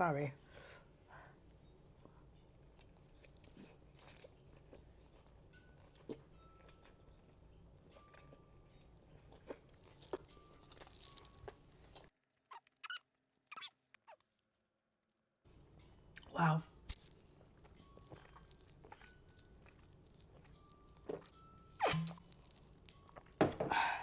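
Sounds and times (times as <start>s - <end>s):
person chewing with mouth clicks: 2.0s - 12.1s, 16.9s - 23.4s.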